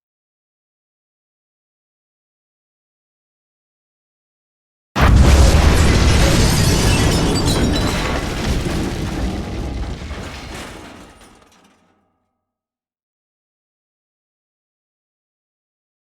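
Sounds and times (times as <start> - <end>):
bomb explosion: 5.0 - 11.5
crackling debris: 5.0 - 12.0.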